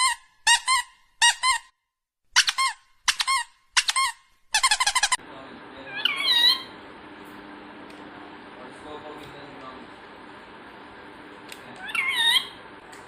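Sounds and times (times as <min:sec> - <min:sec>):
parrot squeaking: 0:00.0 - 0:01.7, 0:02.4 - 0:05.2, 0:05.9 - 0:06.7, 0:11.8 - 0:12.6.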